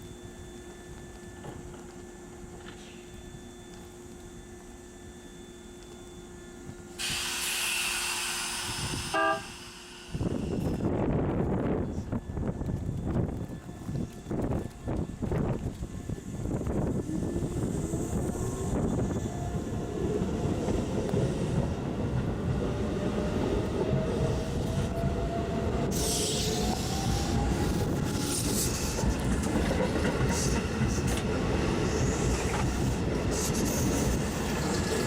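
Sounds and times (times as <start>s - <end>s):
electric train rumbling past: 0.0s - 35.0s
train motor whine: 0.0s - 35.0s
high hiss: 7.0s - 10.9s.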